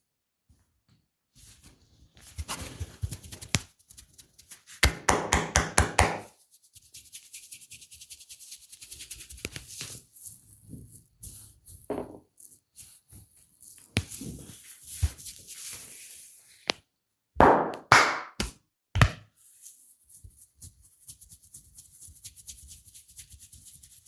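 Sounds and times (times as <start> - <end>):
hands rubbing skin: 1.4 - 4.9, 6.2 - 16.4, 19.4 - 24.0.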